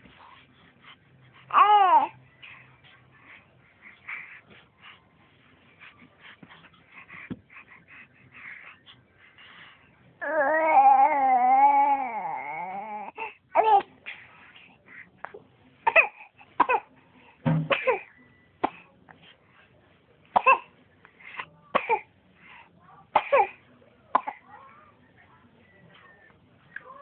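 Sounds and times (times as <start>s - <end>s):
child whimpering: 10.2s - 13.1s
small child coughing: 15.9s - 16.9s, 17.7s - 18.1s, 20.4s - 20.7s, 21.8s - 22.1s, 23.2s - 23.6s, 24.2s - 24.4s.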